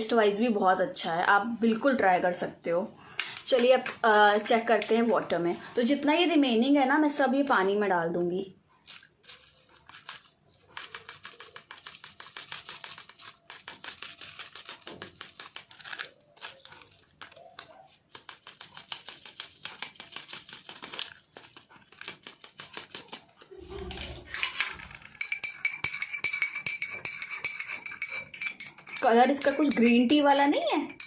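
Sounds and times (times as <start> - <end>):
plastic sachet crinkling: 8.8 - 24.4
spoon clinking against cup: 24.9 - 31.0.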